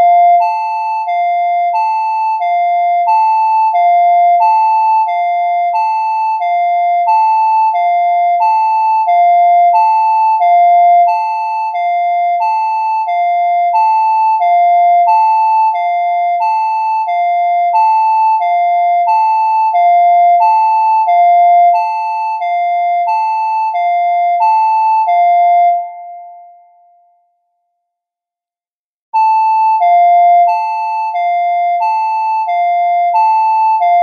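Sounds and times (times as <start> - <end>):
alternating high and low alarm tones: 0.0 - 26.0, 29.2 - 34.0.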